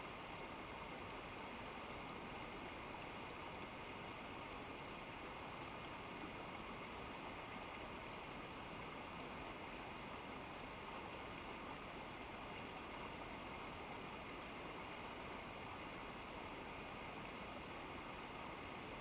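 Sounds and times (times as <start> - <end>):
river water rushing: 0.0 - 19.0.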